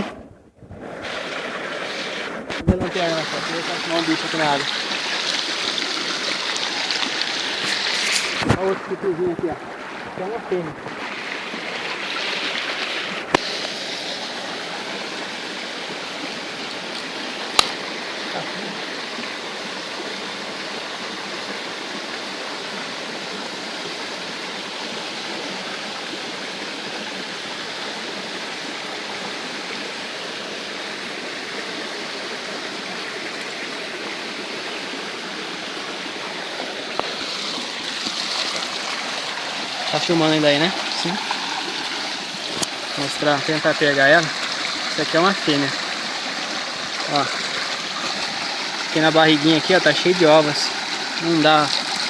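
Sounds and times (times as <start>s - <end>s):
waterfall stream rushing: 0.9s - 52.0s.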